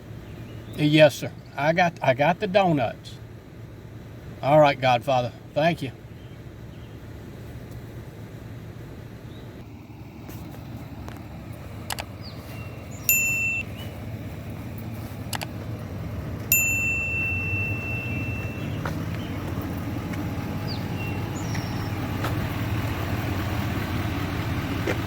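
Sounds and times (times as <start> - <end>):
vehicle engine idling: 0.0 - 25.0
sharp clicks: 11.1 - 12.2, 15.2 - 15.6
electronic chime tones: 13.1 - 13.9, 16.5 - 18.8.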